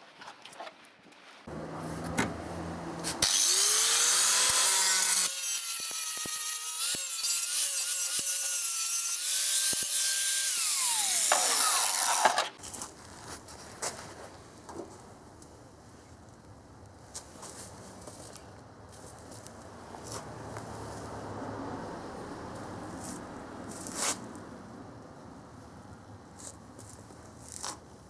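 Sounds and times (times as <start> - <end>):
electric grinder grinding steel: 3.0 - 12.6.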